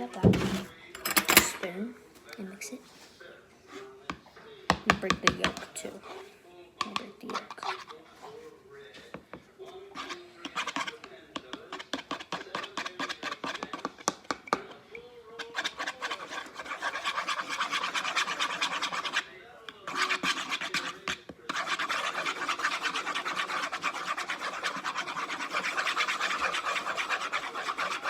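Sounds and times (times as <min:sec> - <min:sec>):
spoon beating eggs in a bowl: 0:03.7 - 0:28.0.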